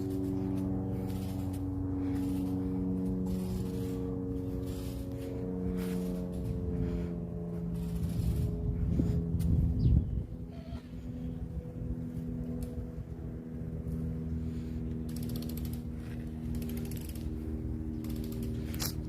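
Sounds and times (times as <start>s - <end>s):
low hum: 0.0s - 19.0s
ratchet wrench clicking: 15.1s - 15.9s, 16.5s - 17.4s, 18.0s - 19.0s.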